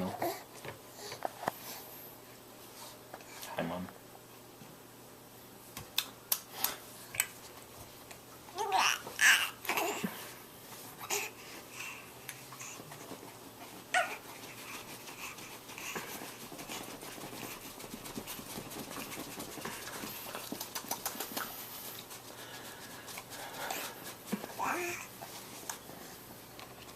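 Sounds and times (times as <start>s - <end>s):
rapid mouth clicking and sputtering: 16.4s - 22.2s.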